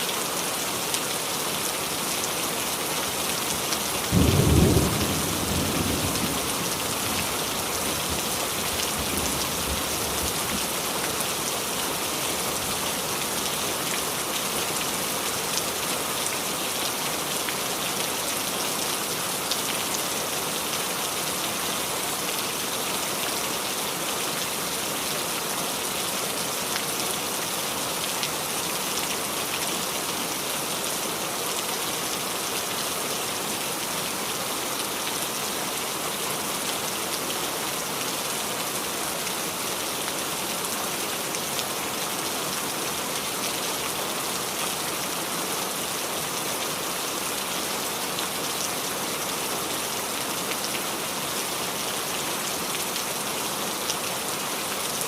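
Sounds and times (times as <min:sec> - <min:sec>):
rain dripping on leaves: 0:00.0 - 0:55.0.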